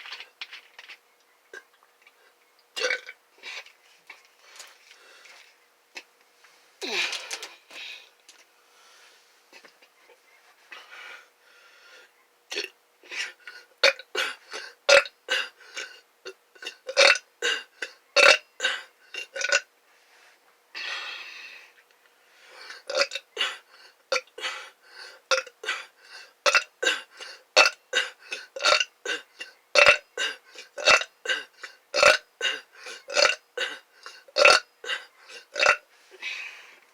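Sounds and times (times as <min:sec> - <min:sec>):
person burping: 0:02.8 - 0:03.2, 0:12.5 - 0:16.0, 0:16.6 - 0:19.7, 0:22.8 - 0:24.6, 0:25.3 - 0:35.9.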